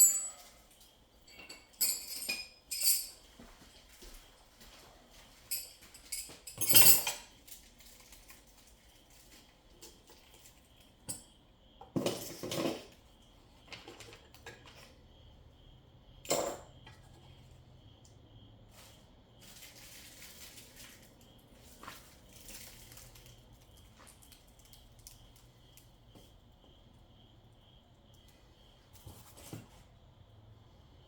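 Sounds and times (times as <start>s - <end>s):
objects clattering: 11.9s - 13.0s.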